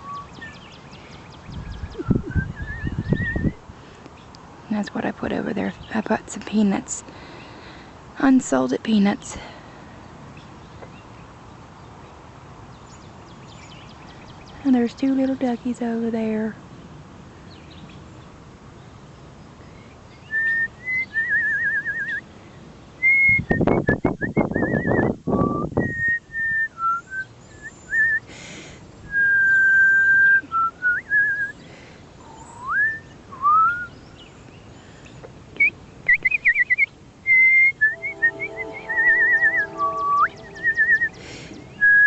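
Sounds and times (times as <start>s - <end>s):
person whistling: 37.4s - 42.0s.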